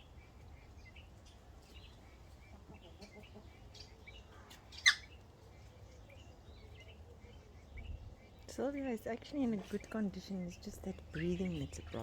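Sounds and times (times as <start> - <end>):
birds chirping faintly: 0.0 - 12.0.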